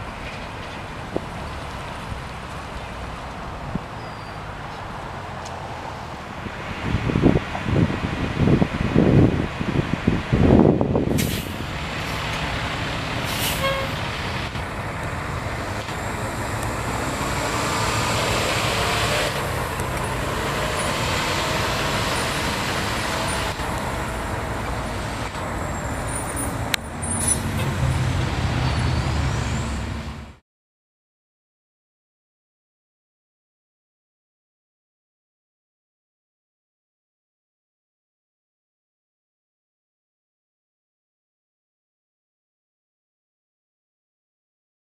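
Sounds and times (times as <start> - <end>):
road traffic: 0.0 - 30.4
truck engine running: 11.2 - 30.3.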